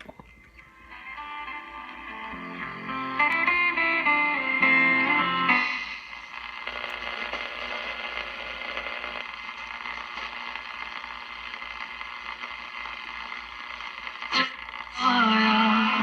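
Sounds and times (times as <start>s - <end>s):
radio static hiss: 0.0s - 16.0s.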